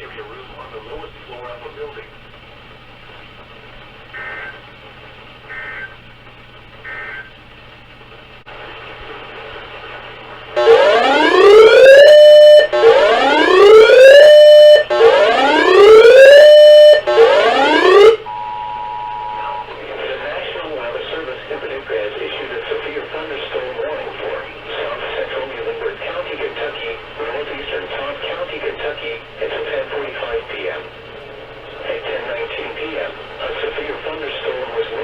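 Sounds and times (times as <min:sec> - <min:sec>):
rising siren-like whoops: 0:10.6 - 0:19.8
two-tone attention signal: 0:10.6 - 0:19.8.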